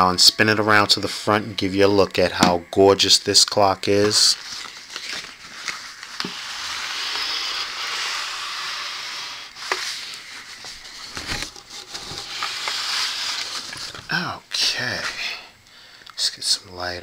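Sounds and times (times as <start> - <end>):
rubbing hiss: 4.2 - 16.4.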